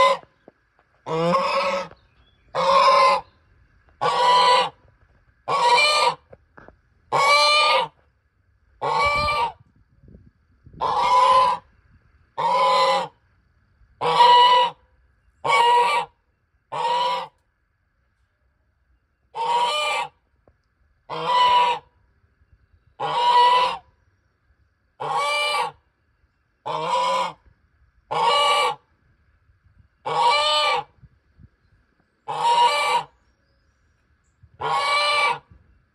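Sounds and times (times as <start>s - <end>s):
goose honking: 0.0s - 0.3s, 1.0s - 3.3s, 4.0s - 4.8s, 5.5s - 6.3s, 7.1s - 8.0s, 8.8s - 9.6s, 10.8s - 11.7s, 12.4s - 13.2s, 14.0s - 14.8s, 15.4s - 17.4s, 19.3s - 20.2s, 21.1s - 21.9s, 23.0s - 23.8s, 25.0s - 25.8s, 26.6s - 27.4s, 28.1s - 28.8s, 30.0s - 30.9s, 32.3s - 33.1s, 34.6s - 35.5s.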